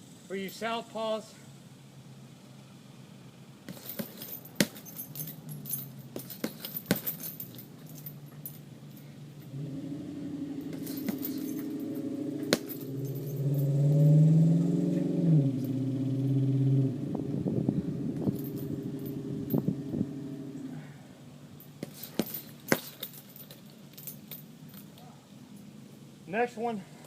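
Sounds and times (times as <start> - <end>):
low engine hum: 1.4 - 26.3
boxing gloves striking heavy bag: 3.7 - 8.1, 10.7 - 11.8, 12.4 - 13.6, 21.8 - 23.6
chains jingling: 3.7 - 9.6, 10.6 - 16.4, 18.2 - 19.8, 21.6 - 25.2.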